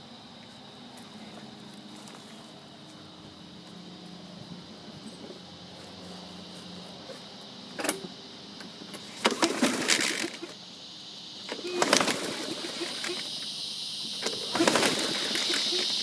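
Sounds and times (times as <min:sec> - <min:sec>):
engine compression chuffs: 0:06.4 - 0:16.0
recoil starter cord pulled: 0:08.9 - 0:10.4.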